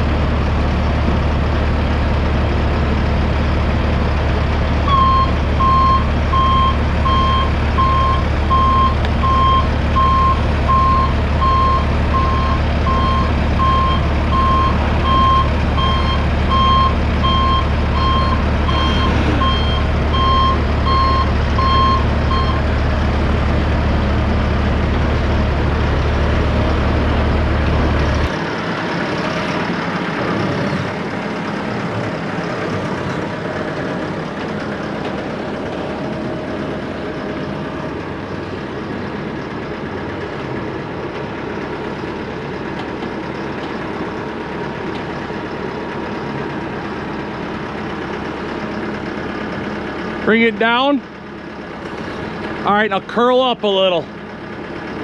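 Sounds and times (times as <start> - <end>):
low engine hum: 0.0 - 55.0
backup alarm beeping: 4.9 - 22.7.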